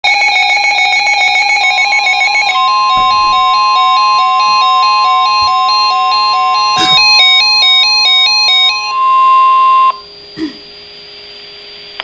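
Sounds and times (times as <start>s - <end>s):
electronic beeping tones: 1.4s - 10.0s.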